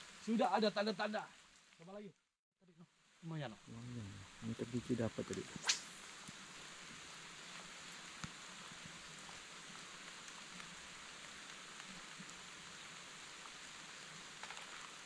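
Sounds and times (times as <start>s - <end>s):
light rain hiss: 0.0s - 15.0s
raindrop ticks: 4.5s - 6.8s, 7.4s - 15.0s.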